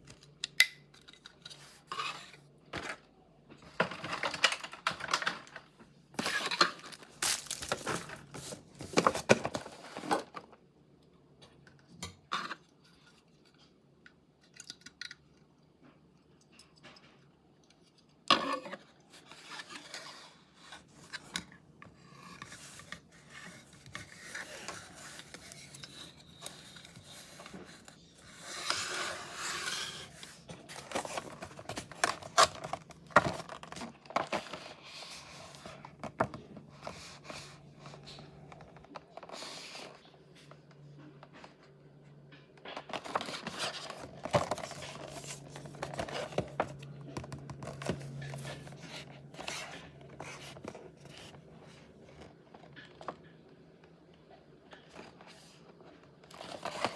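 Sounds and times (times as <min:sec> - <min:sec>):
packaging rustling and tearing: 0:06.2 - 0:10.4, 0:22.3 - 0:40.0, 0:42.9 - 0:52.7.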